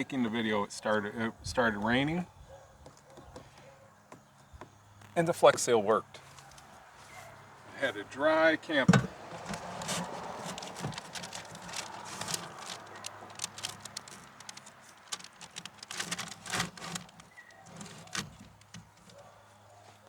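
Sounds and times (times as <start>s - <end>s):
clicks and crackling of tape: 9.4s - 19.2s.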